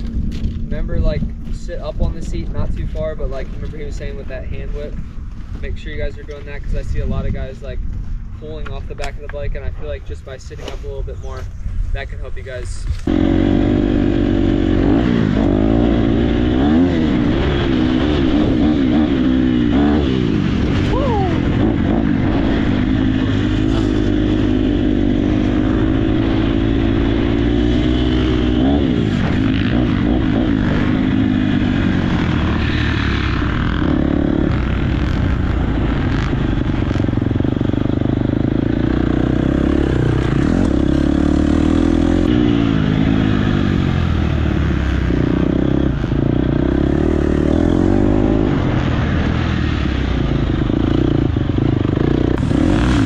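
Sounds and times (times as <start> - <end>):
dirt bike engine revving: 12.8 - 53.0.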